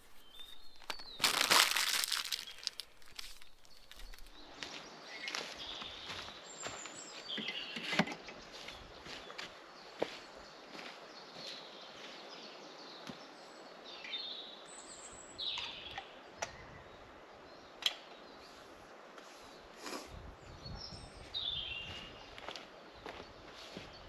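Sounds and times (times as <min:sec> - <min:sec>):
faint outdoor hush: 0:00.0 - 0:04.5
small birds chirping: 0:00.0 - 0:04.6.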